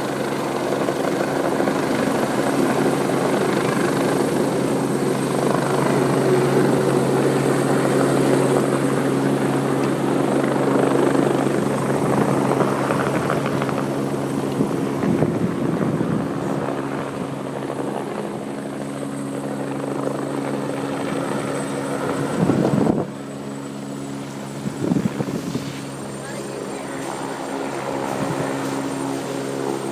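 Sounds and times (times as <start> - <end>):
wind buffeting microphone: 0.0 - 19.2, 19.8 - 29.9
helicopter rotor and turbine: 0.0 - 29.9.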